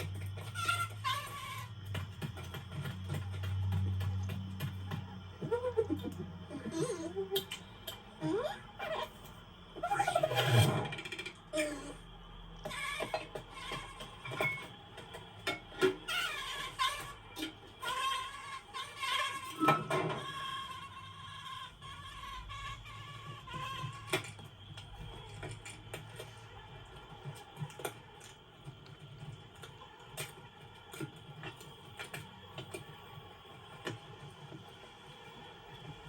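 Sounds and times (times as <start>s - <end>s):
creature-like calls: 5.4s - 7.6s, 8.2s - 9.2s.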